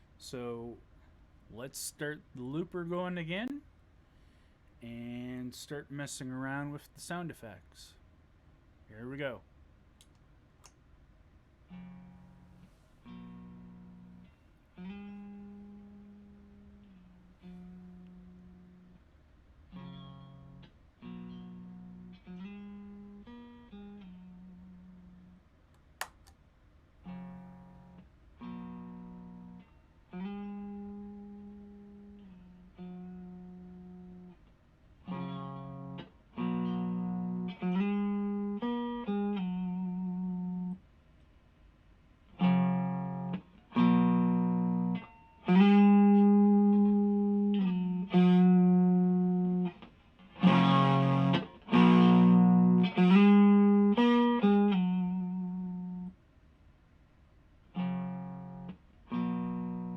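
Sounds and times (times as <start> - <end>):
overdriven electric guitar chords: 11.7 - 19.0, 19.7 - 25.4, 27.0 - 34.4, 35.0 - 40.8, 42.4 - 56.2, 57.7 - 59.9.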